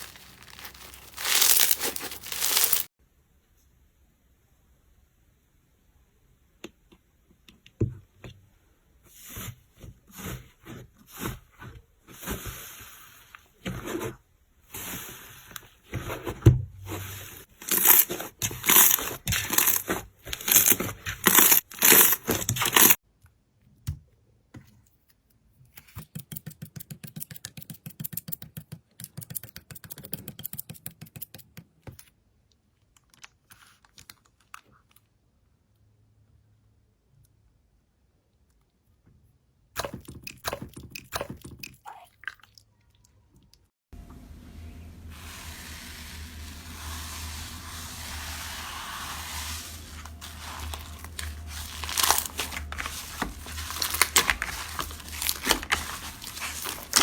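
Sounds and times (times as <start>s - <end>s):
slime crackling: 0.0s - 2.9s, 17.6s - 23.0s, 47.9s - 57.0s.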